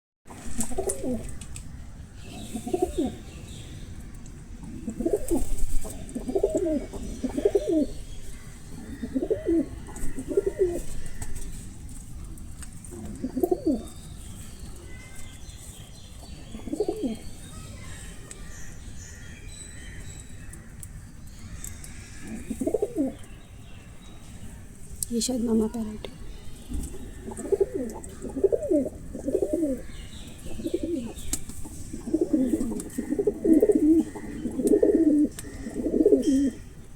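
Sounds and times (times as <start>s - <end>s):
low cooing bird calls: 0.3s - 3.5s, 4.6s - 11.6s, 12.9s - 15.2s, 16.2s - 18.3s, 21.5s - 23.4s, 26.7s - 36.9s.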